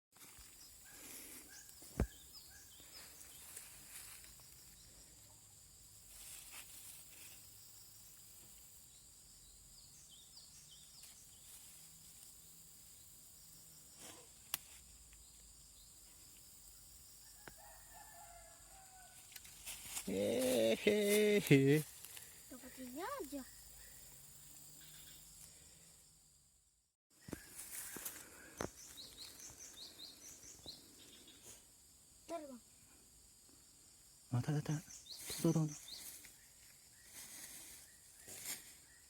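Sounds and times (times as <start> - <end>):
faint bird chirps: 22.2 - 25.3.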